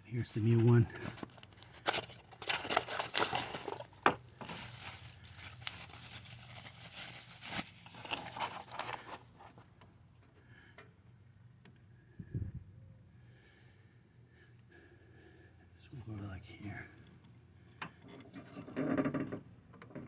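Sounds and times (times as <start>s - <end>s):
plastic packaging crinkling: 1.0s - 9.5s
small clicks and knocks: 17.2s - 20.0s.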